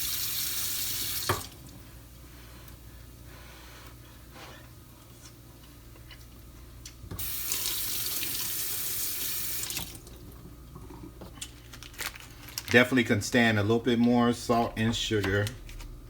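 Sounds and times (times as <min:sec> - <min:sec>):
kitchen tap running: 0:00.0 - 0:01.8, 0:07.1 - 0:11.0.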